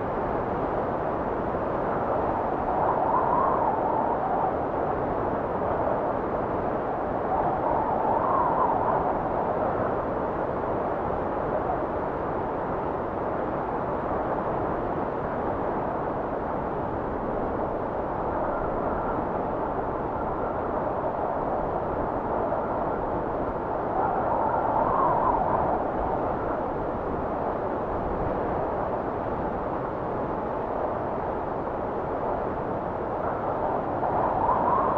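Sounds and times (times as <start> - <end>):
wind blowing: 17.1 - 34.9.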